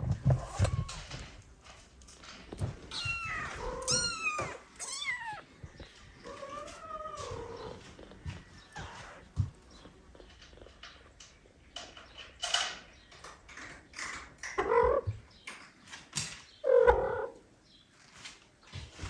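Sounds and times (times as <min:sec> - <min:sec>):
cat meowing: 0:02.9 - 0:05.5.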